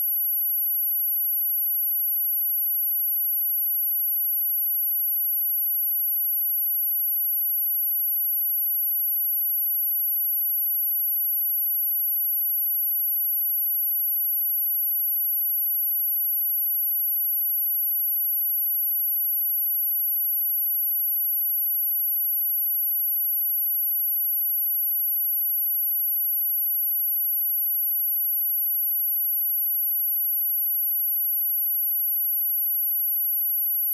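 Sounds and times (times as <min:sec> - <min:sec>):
high-pitched sine test tone: 0:33.0 - 0:33.9.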